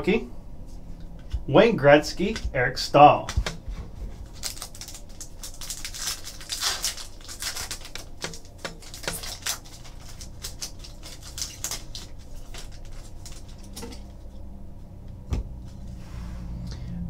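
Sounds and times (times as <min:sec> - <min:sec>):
foil wrapper rustling and tearing: 0:04.1 - 0:14.3.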